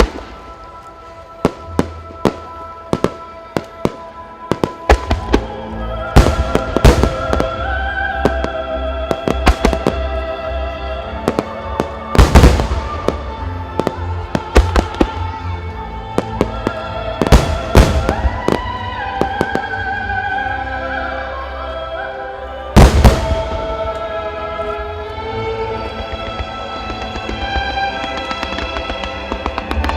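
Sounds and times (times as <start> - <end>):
music: 0.0 - 29.9
sharp firework cracks: 9.2 - 10.1, 13.9 - 15.2.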